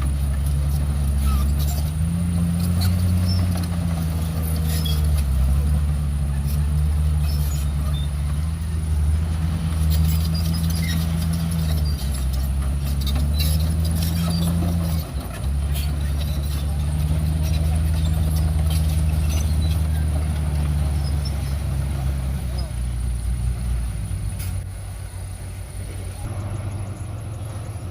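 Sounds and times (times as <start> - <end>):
heavy diesel engine running: 0.0 - 27.9
clicks and clanks: 9.7 - 21.7.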